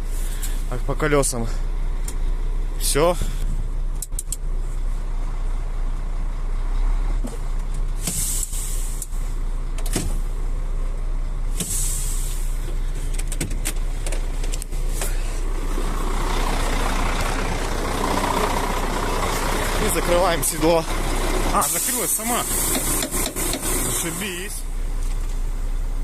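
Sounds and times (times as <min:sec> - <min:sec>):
truck engine idling: 0:00.0 - 0:26.0
compressed air hissing: 0:08.0 - 0:09.0, 0:11.6 - 0:12.6, 0:21.0 - 0:24.2
broad rushing noise: 0:14.9 - 0:24.5.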